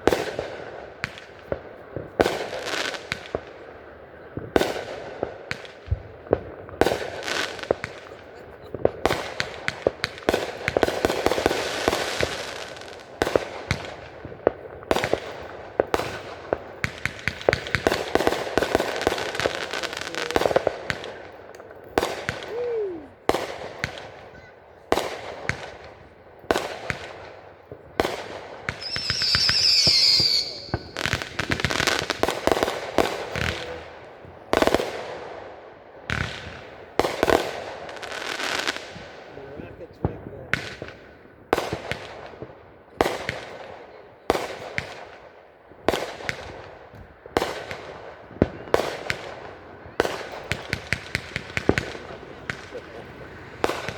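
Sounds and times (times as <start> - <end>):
firework crackling: 0.0 - 53.9
firework shells bursting: 28.1 - 34.1
high warbling firework whistle: 28.8 - 32.0.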